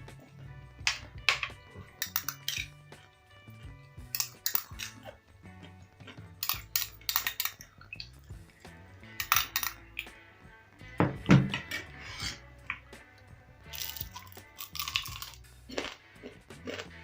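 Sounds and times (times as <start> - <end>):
faint background music: 0.0 - 17.0
utensils and dishes clinking: 0.9 - 3.1, 4.0 - 5.1, 6.4 - 8.2, 9.2 - 9.8, 13.7 - 15.4.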